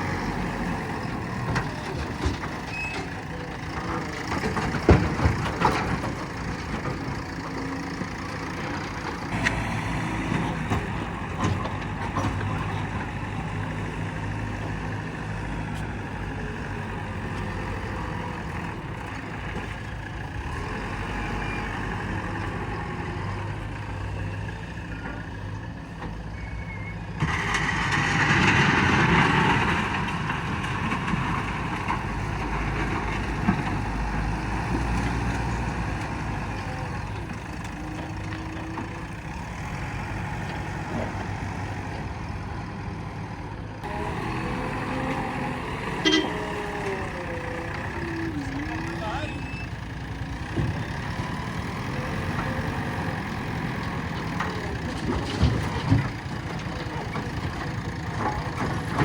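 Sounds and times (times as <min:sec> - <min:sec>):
heavy diesel machinery running: 0:00.0 - 0:59.0.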